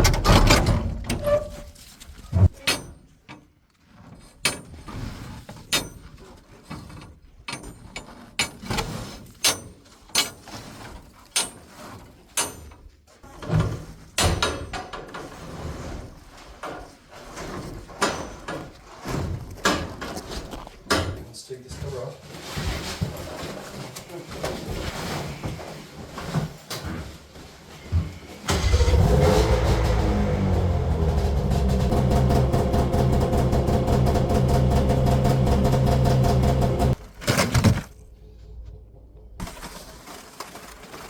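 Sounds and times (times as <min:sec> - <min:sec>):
knocks and rattles of handling: 0:00.0 - 0:15.4
loud thumps: 0:30.8 - 0:37.9.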